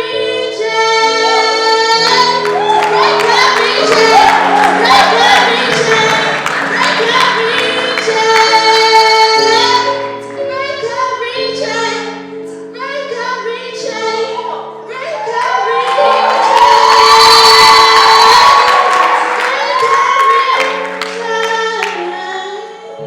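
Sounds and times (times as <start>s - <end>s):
person singing: 0.0s - 10.0s.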